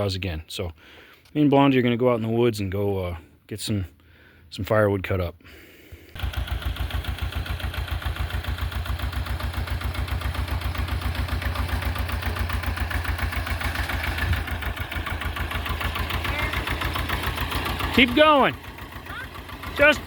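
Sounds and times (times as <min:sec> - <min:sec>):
tractor engine idling: 0:06.0 - 0:20.0.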